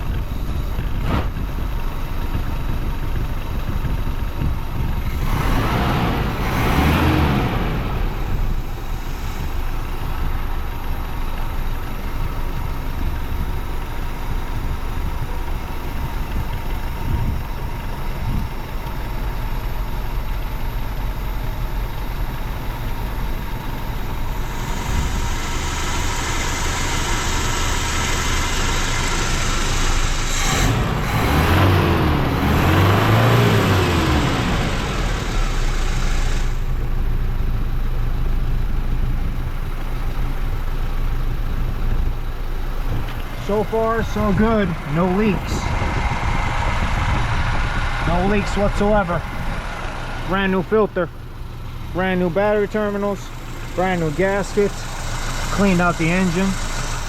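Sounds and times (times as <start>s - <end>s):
pickup engine idling: 0.0s - 57.0s
hiss: 24.4s - 31.0s, 34.7s - 36.6s.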